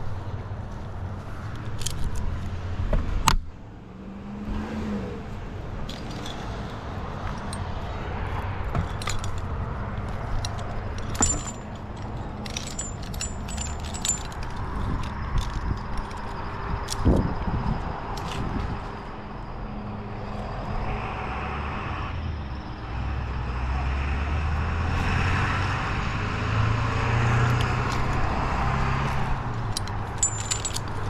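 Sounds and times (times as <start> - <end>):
metal carabiners jangling: 1.6 - 2.3, 5.8 - 17.5, 18.2 - 19.5, 27.4 - 31.0.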